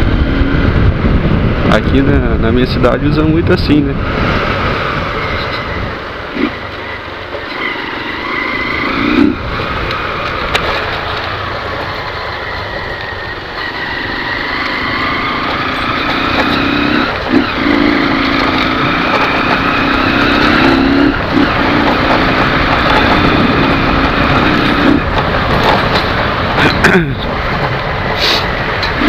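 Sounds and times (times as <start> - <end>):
motorcycle engine running: 0.0 - 29.0.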